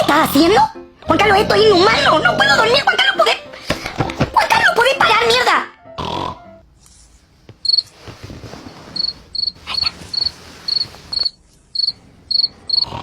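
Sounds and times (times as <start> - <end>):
cricket chirping: 7.6 - 7.8, 9.0 - 13.0.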